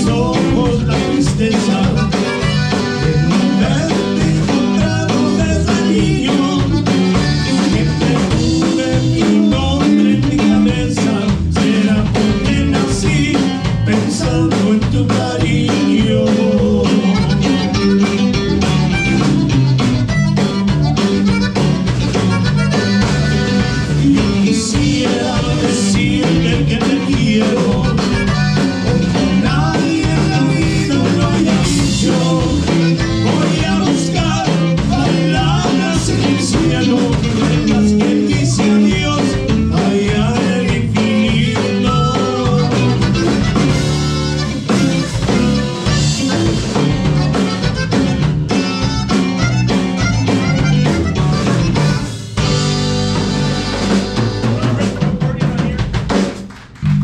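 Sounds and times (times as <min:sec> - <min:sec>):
band playing with drums and guitar: 0:00.0 - 0:57.0.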